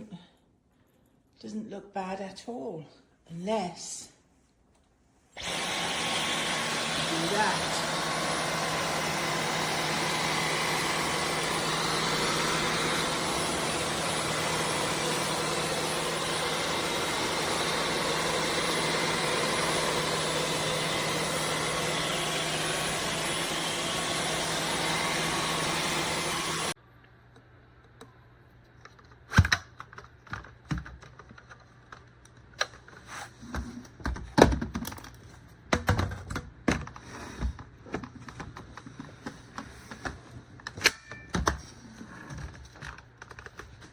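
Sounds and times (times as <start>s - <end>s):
vacuum cleaner motor whine: 5.4s - 26.8s.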